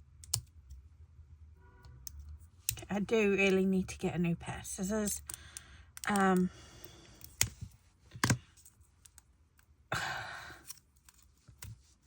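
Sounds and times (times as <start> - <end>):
person sighing: 9.9 - 10.7.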